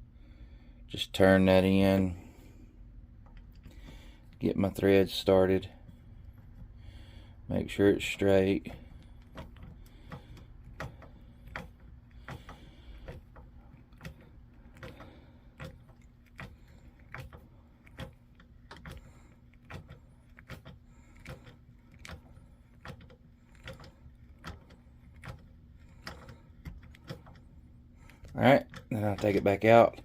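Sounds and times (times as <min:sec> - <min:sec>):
steady low hum: 0:00.0 - 0:30.0
screw clicking and creaking in wood: 0:08.3 - 0:29.9.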